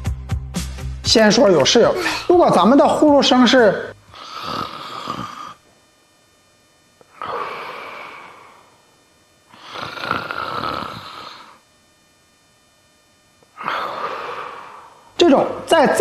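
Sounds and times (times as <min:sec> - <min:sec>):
person snoring: 0:04.0 - 0:05.7, 0:07.0 - 0:08.8, 0:09.5 - 0:11.6, 0:13.5 - 0:15.2.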